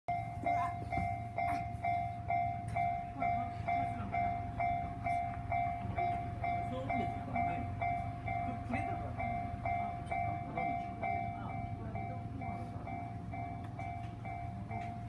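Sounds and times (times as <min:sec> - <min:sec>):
level crossing bell clanging: 0:00.1 - 0:15.0.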